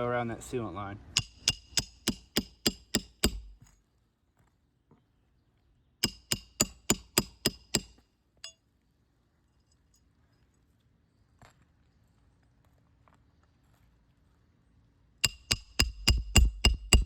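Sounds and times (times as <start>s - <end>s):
hammer striking metal bar: 1.2s - 3.6s, 6.0s - 8.6s, 15.2s - 17.0s.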